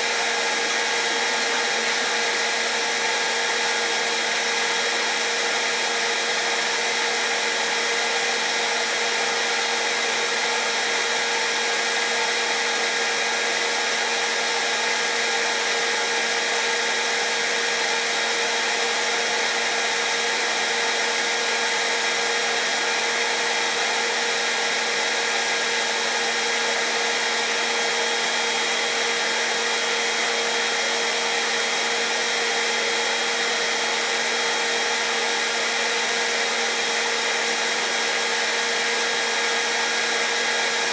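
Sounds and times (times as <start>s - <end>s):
hair dryer running: 0.0s - 40.9s.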